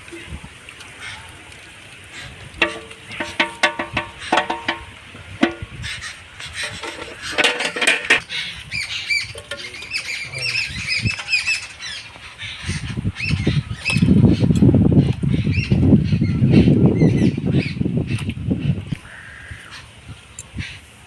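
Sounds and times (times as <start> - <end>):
rough rustling noise: 0.0 - 16.0
birds chirping and squawking: 2.0 - 21.0.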